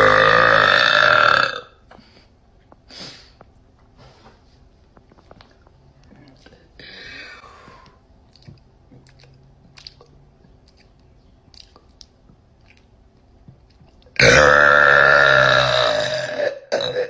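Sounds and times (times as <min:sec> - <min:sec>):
girl burping loudly: 0:00.0 - 0:01.8, 0:14.2 - 0:17.0.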